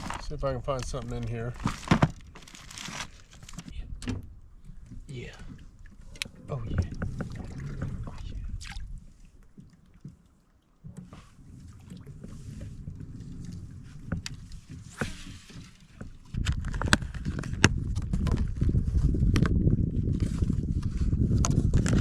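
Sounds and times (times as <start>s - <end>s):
fishing gear clicks and knocks: 0.0s - 8.0s, 14.0s - 19.6s.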